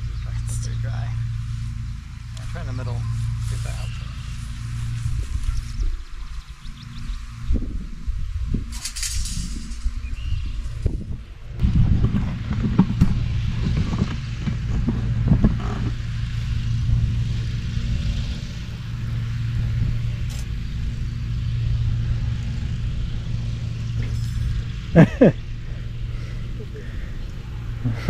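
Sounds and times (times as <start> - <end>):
garden tiller engine running: 0.0 - 7.8, 11.4 - 28.0
tines clattering on hard ground: 8.7 - 11.0, 11.6 - 16.8.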